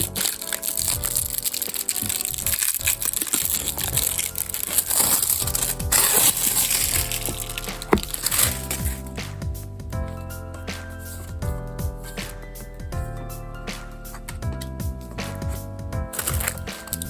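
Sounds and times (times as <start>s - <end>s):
plastic packaging crinkling: 0.0s - 9.1s, 16.2s - 17.0s
background music: 0.0s - 17.0s.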